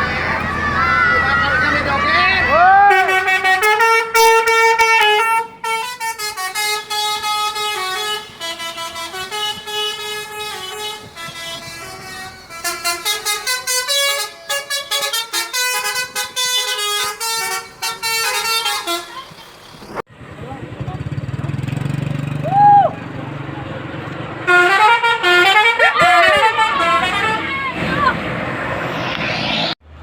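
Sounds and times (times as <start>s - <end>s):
bus horn playing a melody: 2.7s - 19.4s, 24.4s - 27.6s.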